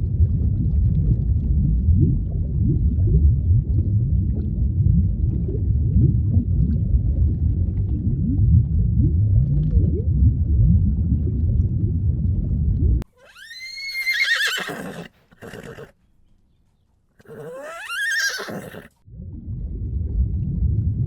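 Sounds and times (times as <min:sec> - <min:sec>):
low rumble: 0:00.0 - 0:13.1, 0:19.0 - 0:21.0
horse whinnying: 0:13.1 - 0:15.9, 0:17.2 - 0:18.9.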